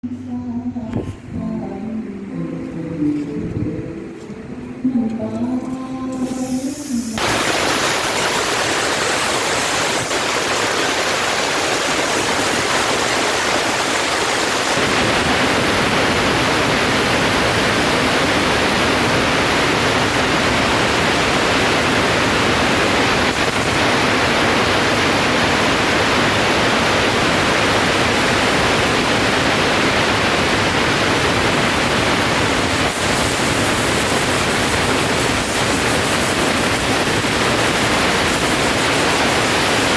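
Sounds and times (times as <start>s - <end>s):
cutting torch hissing: 6.1s - 39.9s.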